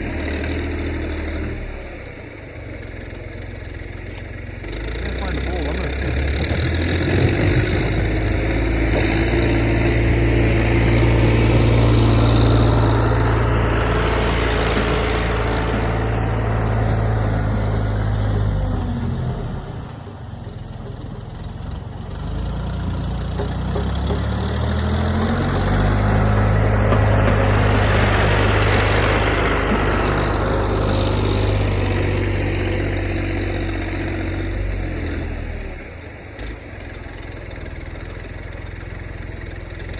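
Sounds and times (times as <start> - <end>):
backhoe diesel engine revving: 0.0 - 39.9.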